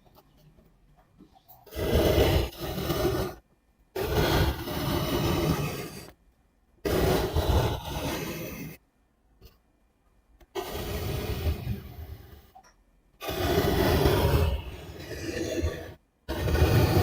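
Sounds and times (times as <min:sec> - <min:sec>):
paint strokes scraping a surface: 0:01.6 - 0:03.4, 0:04.0 - 0:06.2, 0:06.8 - 0:08.8, 0:10.6 - 0:12.5, 0:13.2 - 0:17.0.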